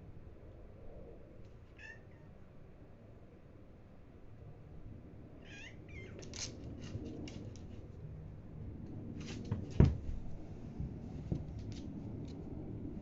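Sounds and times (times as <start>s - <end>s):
cat crying: 1.8s - 2.4s, 5.4s - 6.2s.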